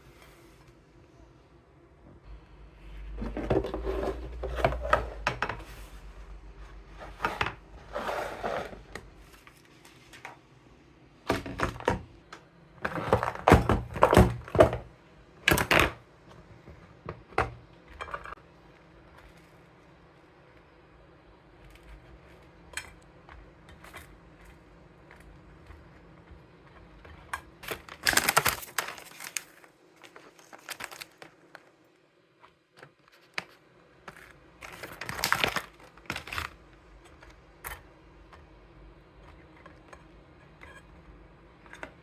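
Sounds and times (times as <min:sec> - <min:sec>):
objects knocking and thudding: 0:03.1 - 0:05.8, 0:11.3 - 0:12.1, 0:12.8 - 0:14.9.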